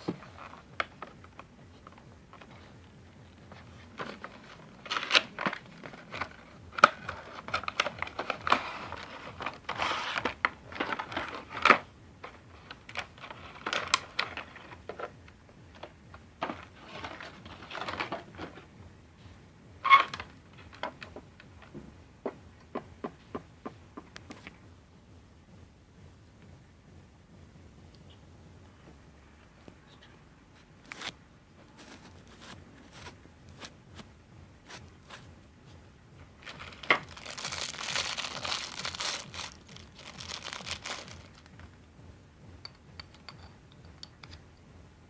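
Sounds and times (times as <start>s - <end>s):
packaging crinkling and rustling: 0.0s - 2.8s, 3.4s - 15.1s, 15.7s - 18.6s, 30.9s - 33.8s, 36.4s - 41.7s.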